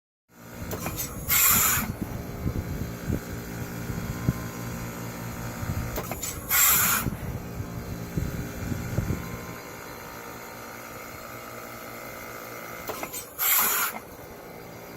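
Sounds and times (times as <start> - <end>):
heat pump humming: 0.4 - 14.9
hiss bursts: 0.7 - 2.0, 6.0 - 7.1, 12.9 - 14.2.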